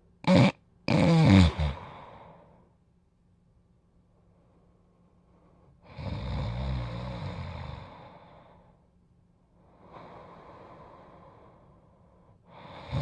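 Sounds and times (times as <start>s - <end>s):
person snoring: 0.2s - 2.4s, 5.8s - 8.6s, 12.5s - 13.0s.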